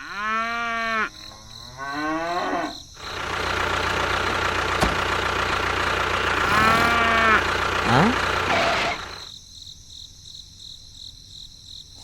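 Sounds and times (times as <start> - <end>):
cattle mooing: 1.7 - 2.8, 6.3 - 9.2
steady mechanical hum: 3.0 - 9.3.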